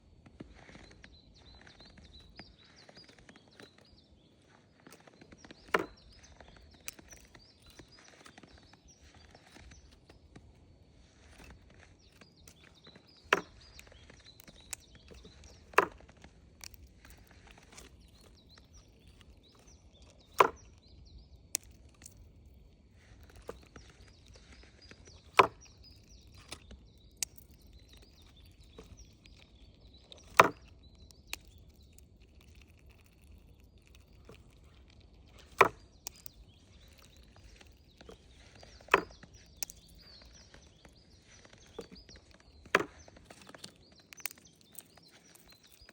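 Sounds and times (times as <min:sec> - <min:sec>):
faint outdoor background: 0:00.0 - 0:45.9
sharp knocks or cracks: 0:05.5 - 0:06.0, 0:30.2 - 0:31.6, 0:41.4 - 0:44.4.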